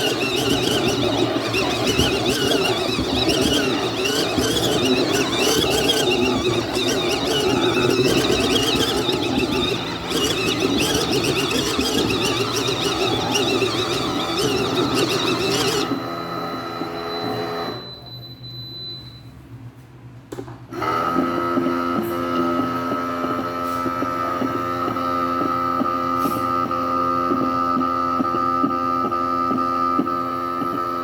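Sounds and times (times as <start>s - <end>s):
washing machine motor humming: 0.0s - 16.4s.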